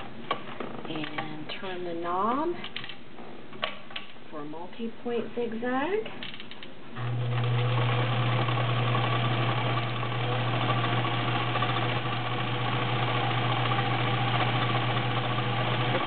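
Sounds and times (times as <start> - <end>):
sewing machine motor humming: 7.0 - 16.0.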